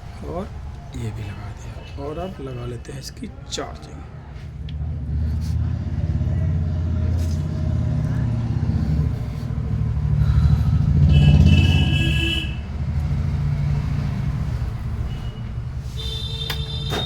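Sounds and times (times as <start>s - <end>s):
vehicle engine rumble: 3.9s - 17.0s.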